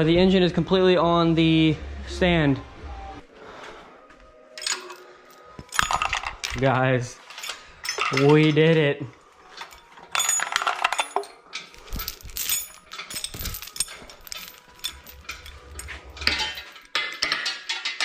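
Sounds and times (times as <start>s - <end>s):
metal tools clinking: 4.5s - 18.0s.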